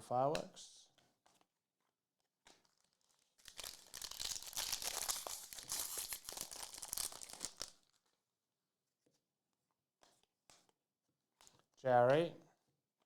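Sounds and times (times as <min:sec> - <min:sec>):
foil wrapper tearing and crinkling: 0:02.5 - 0:07.9.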